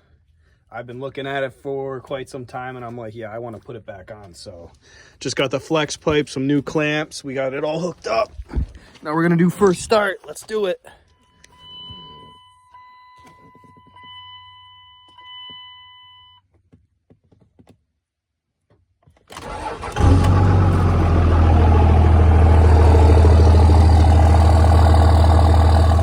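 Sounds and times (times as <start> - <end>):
diesel engine idling: 19.4 - 26.0.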